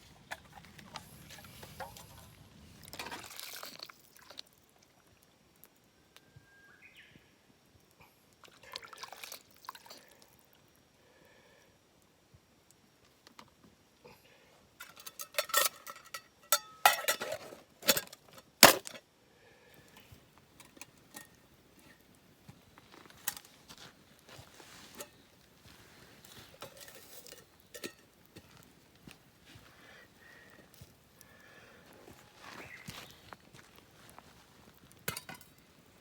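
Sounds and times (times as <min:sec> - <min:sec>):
metal cooking gear clattering: 0:14.8 - 0:19.0, 0:26.6 - 0:28.5.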